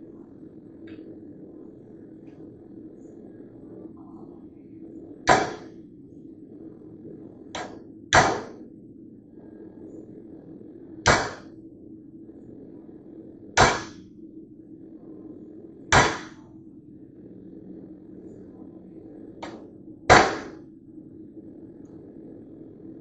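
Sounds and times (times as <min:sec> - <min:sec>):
steady low hum: 0:00.0 - 0:23.0
hammer striking metal: 0:11.1 - 0:11.4, 0:16.0 - 0:16.3, 0:20.1 - 0:20.5.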